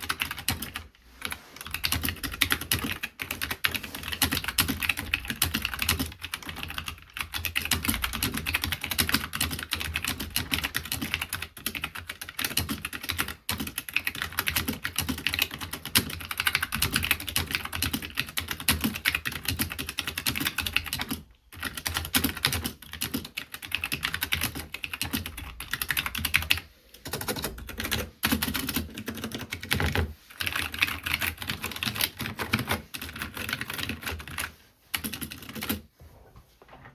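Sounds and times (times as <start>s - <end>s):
fast mechanical keyboard typing: 0.0s - 35.9s.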